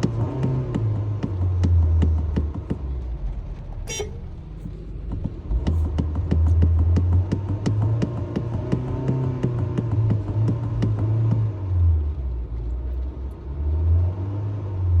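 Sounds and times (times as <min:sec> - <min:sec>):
car horn honking: 0:03.8 - 0:04.4.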